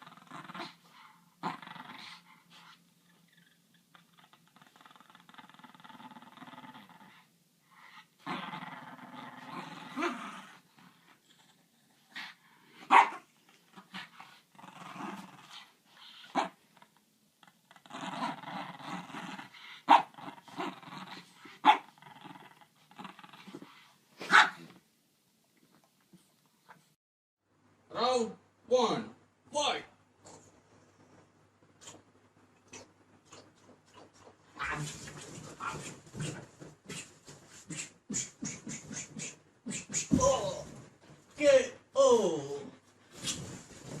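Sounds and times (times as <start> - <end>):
dog growling: 0.0 - 23.9, 32.6 - 40.8
dog barking: 12.9 - 13.2, 24.3 - 24.6.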